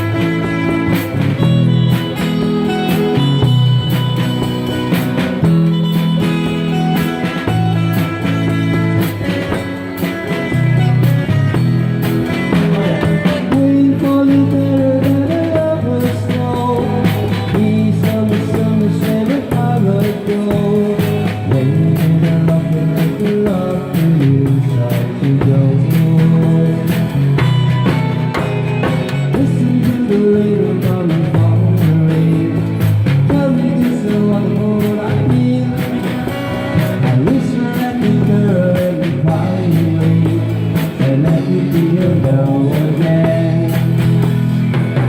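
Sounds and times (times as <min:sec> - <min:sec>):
guitar: 0:00.0 - 0:45.0
steady drum beat: 0:00.0 - 0:45.0
person singing: 0:12.2 - 0:44.4.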